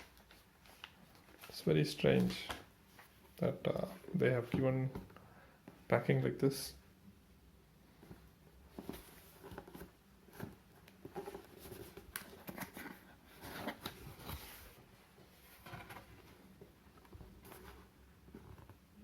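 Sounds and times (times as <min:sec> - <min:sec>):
cardboard box rustling: 0:08.6 - 0:18.8.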